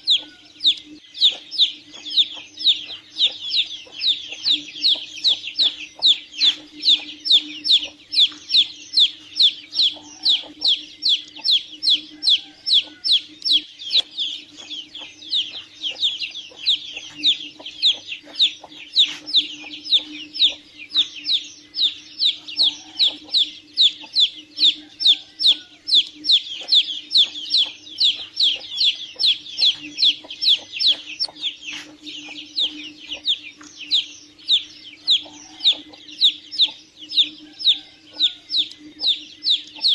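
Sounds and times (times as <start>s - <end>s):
chicks peeping: 0.0s - 39.9s
steady low hum: 0.0s - 39.9s.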